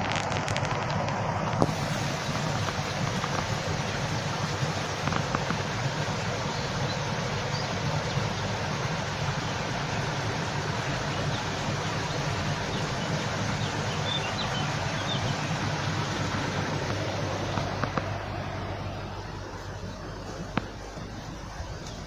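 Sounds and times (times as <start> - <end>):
running water: 0.0 - 22.0
high bird chirps: 12.7 - 15.5.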